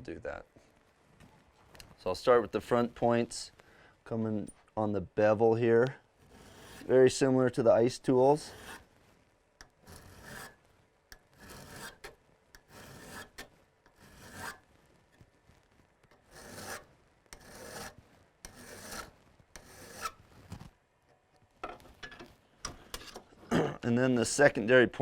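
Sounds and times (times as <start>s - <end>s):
hand file rasping on metal: 6.3s - 7.0s, 8.4s - 8.8s, 9.6s - 10.6s, 11.2s - 14.6s, 16.2s - 20.2s.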